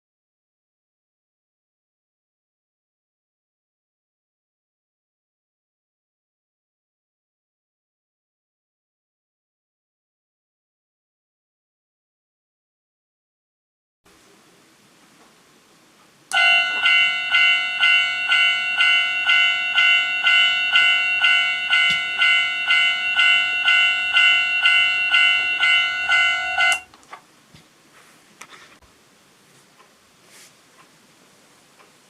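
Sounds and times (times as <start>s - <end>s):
railway crossing warning bell: 16.3s - 26.9s.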